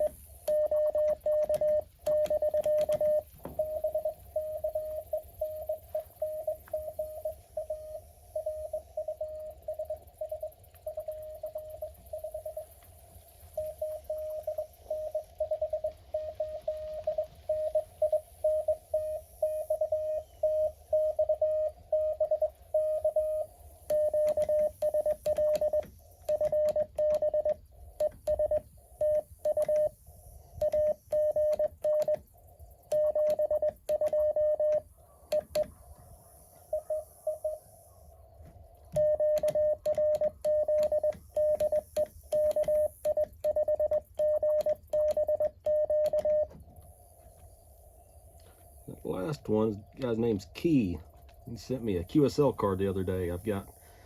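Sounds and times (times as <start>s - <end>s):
morse code tones: 0.0s - 12.9s, 13.5s - 35.7s, 36.6s - 37.7s, 38.5s - 47.5s
keyer paddle clicks: 0.4s - 3.6s, 23.9s - 28.7s, 30.6s - 32.3s, 32.9s - 35.8s, 38.4s - 46.6s.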